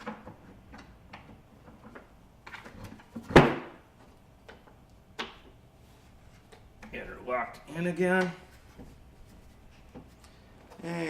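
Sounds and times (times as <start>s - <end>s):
loud board knock: 3.3s - 3.8s.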